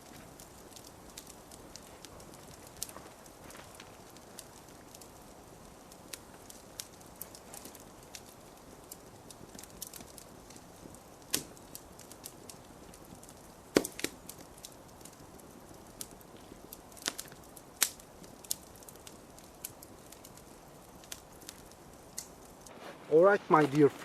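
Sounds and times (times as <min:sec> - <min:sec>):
wood cracking and snapping: 0:11.2 - 0:22.7.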